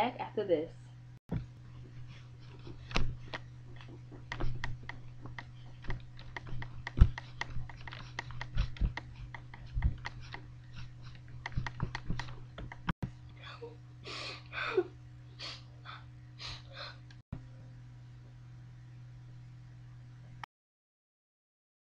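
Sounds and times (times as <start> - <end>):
steady low hum: 0.0 - 20.4
sharp clicks and taps: 2.5 - 12.9.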